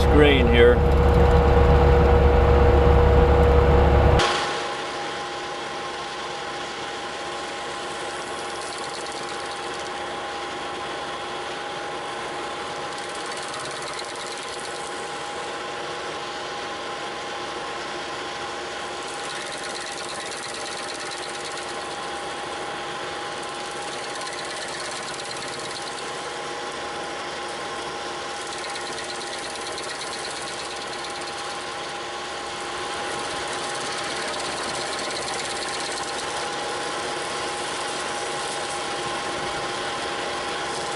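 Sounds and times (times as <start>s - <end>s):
diesel engine running under load: 0.0s - 4.3s
steady hydraulic whine: 0.0s - 4.6s, 27.5s - 40.9s.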